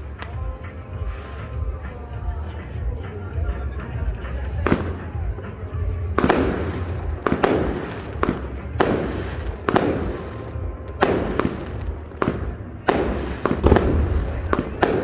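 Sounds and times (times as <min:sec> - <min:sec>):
fireworks bursting: 0:04.6 - 0:15.0.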